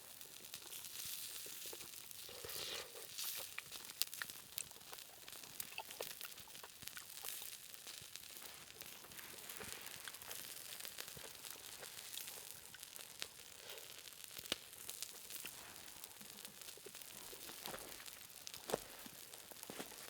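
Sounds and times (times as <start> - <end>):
food sizzling on hot stone: 0.0 - 20.0
wood fire crackling and popping: 0.0 - 20.0.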